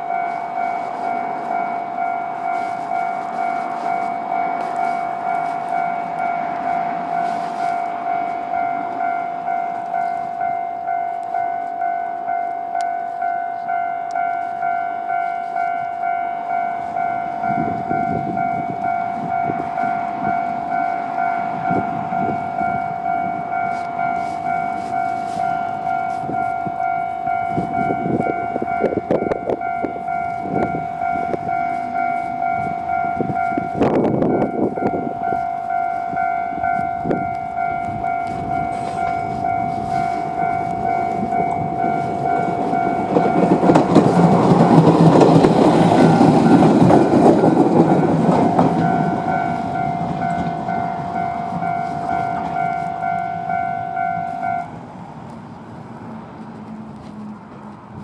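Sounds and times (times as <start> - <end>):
diesel railcar engine and wheels: 0.0 - 58.0
level crossing warning bell: 0.0 - 58.0.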